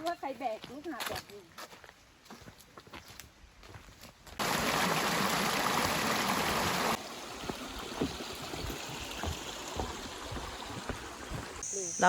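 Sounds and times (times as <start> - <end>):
rushing water: 4.4 - 11.6.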